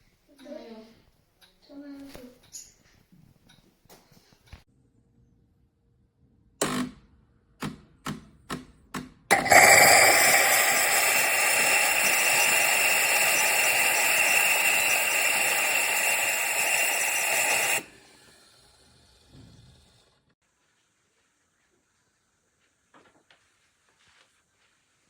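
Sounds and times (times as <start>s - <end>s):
espresso machine running: 9.3s - 18.8s.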